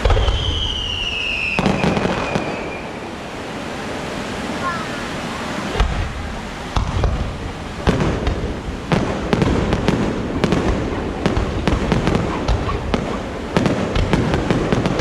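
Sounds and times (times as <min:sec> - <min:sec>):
firework shells booming: 0:00.0 - 0:03.0, 0:05.7 - 0:15.0
firework sharp cracks: 0:00.0 - 0:03.1, 0:05.7 - 0:15.0.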